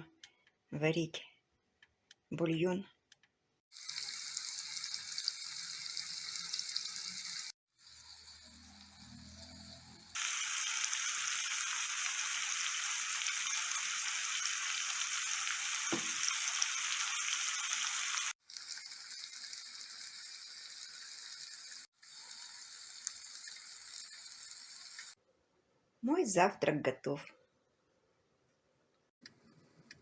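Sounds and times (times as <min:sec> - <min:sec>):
food sizzling in a pan: 0:03.7 - 0:25.2.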